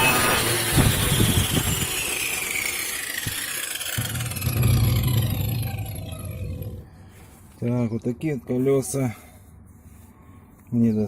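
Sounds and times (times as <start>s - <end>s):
motor whine falling in pitch: 0.0s - 7.1s
low rumble: 4.0s - 7.2s.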